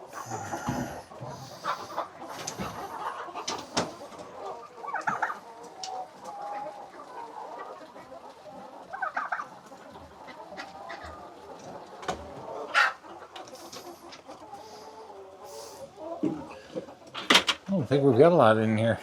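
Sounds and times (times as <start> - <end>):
chickens clucking: 0.0 - 19.0.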